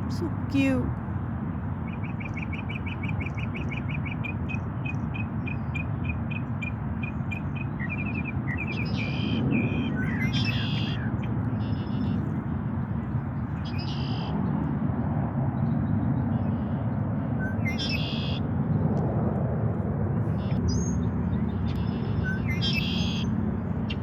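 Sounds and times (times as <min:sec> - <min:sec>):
songbirds chirping: 0:01.7 - 0:12.6, 0:13.3 - 0:14.3.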